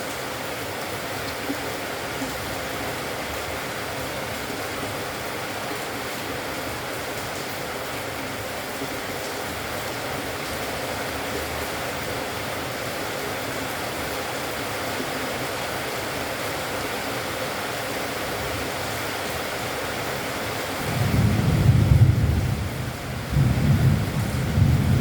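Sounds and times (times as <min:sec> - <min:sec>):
heavy rain: 0:00.0 - 0:25.0
thunder rumbling: 0:20.8 - 0:25.0.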